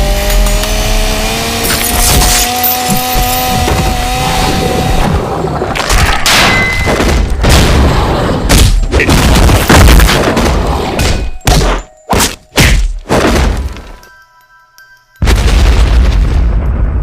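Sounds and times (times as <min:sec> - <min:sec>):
heavy fight thuds and booms: 0:06.4 - 0:13.8, 0:15.2 - 0:17.0
punch impacts: 0:08.5 - 0:13.8.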